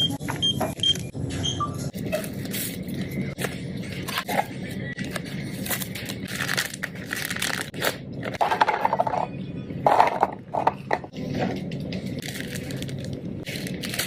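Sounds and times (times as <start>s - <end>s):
food packaging crinkling and tearing: 5.0s - 8.4s, 12.0s - 14.0s.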